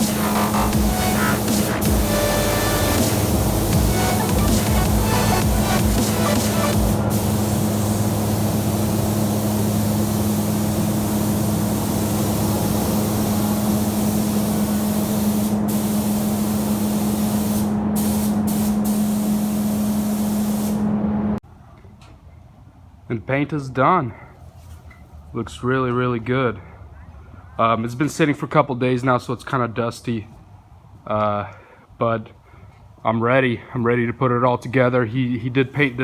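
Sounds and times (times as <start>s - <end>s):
paint spray gun hissing: 0.0s - 20.9s
steady low hum: 0.0s - 21.4s.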